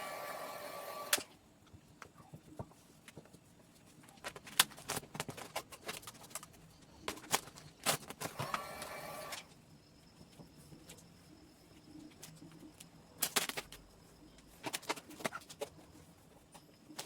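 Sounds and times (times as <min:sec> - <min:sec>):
steady whirring: 0:00.0 - 0:01.4, 0:08.2 - 0:09.6.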